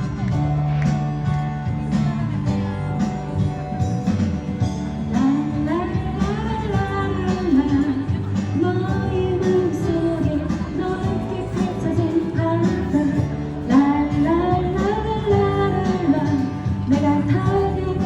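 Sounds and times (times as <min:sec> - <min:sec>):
person singing: 0:05.1 - 0:18.0.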